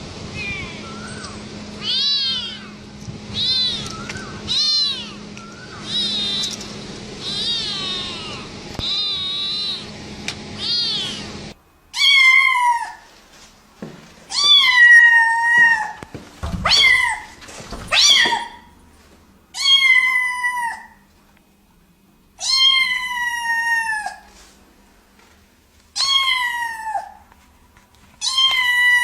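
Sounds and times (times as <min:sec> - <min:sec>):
cats yowling: 0:00.3 - 0:09.9, 0:10.6 - 0:13.1, 0:14.3 - 0:18.7, 0:19.5 - 0:21.1, 0:22.4 - 0:24.3, 0:26.0 - 0:27.3, 0:28.2 - 0:29.0
long high cat meows: 0:01.8 - 0:05.2, 0:07.2 - 0:09.9, 0:10.6 - 0:11.2, 0:11.9 - 0:13.1, 0:14.3 - 0:18.6, 0:19.6 - 0:21.0, 0:22.4 - 0:24.3, 0:26.0 - 0:27.2, 0:28.2 - 0:29.0.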